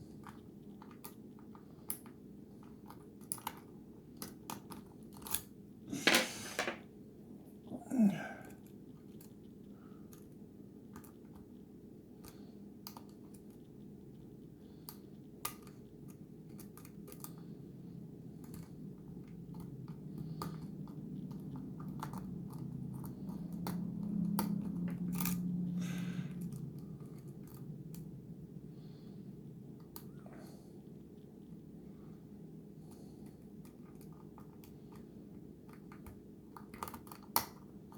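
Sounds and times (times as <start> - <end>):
steady low hum: 5.6 - 35.8.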